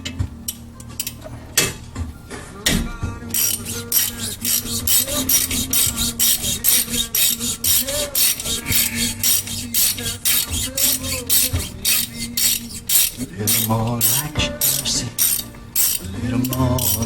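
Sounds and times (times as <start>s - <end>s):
song playing in background: 0.0s - 17.0s
ratchet clicking: 3.4s - 17.0s.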